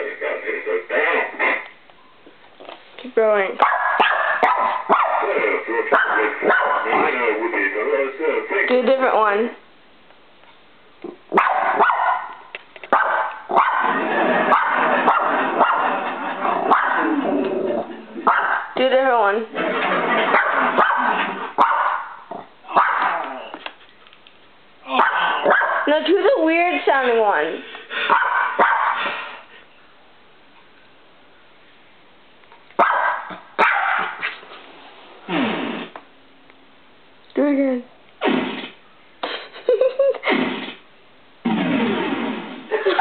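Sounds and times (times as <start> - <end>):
dog barking: 3.6 - 7.0, 11.3 - 17.1, 18.2 - 18.8, 20.3 - 23.3, 24.9 - 25.9, 28.0 - 29.1, 32.8 - 34.2.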